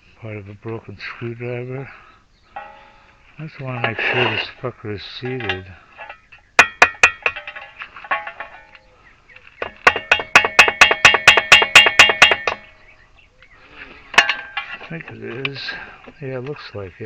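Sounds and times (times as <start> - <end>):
hammer tapping on metal: 5.2 - 8.8, 9.6 - 12.8.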